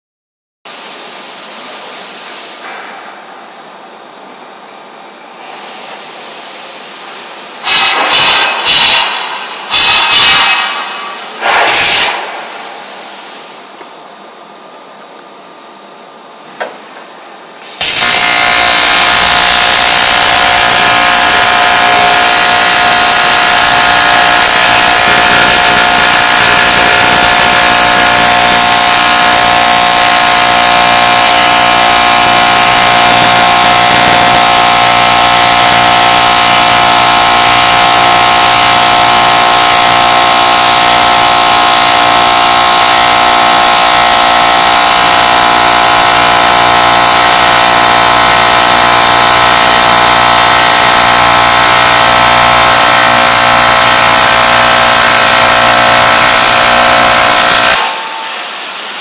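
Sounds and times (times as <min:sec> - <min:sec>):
arc welding buzz: 0:07.6 - 0:12.8, 0:17.6 - 0:59.0.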